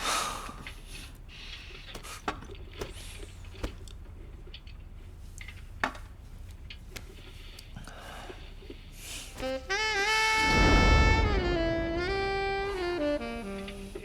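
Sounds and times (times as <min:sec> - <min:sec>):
steady low hum: 0:10.2 - 0:14.0.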